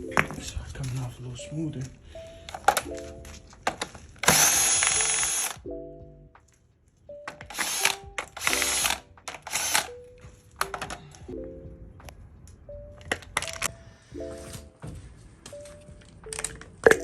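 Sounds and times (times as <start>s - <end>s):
power tool spinning bolts: 4.2s - 5.6s, 7.4s - 9.9s.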